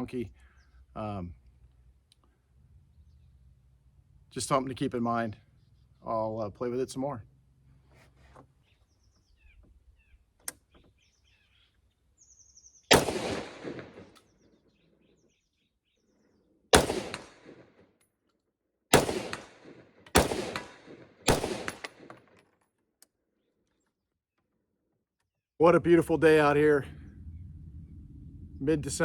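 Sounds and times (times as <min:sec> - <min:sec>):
faint bird chirps: 0:08.6 - 0:12.9
rifle shots: 0:12.9 - 0:14.2, 0:16.7 - 0:17.8, 0:18.9 - 0:22.3.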